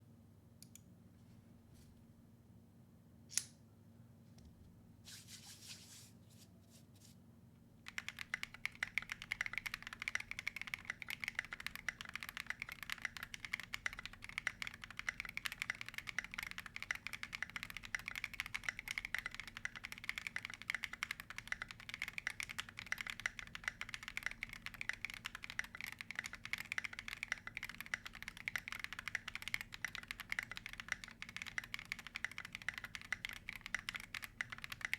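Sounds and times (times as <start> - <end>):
mechanical keyboard typing: 7.9 - 34.9.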